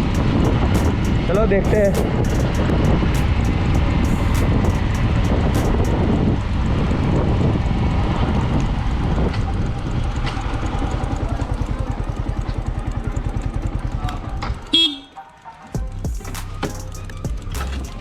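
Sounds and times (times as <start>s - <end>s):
motorcycle engine running: 0.0s - 15.2s.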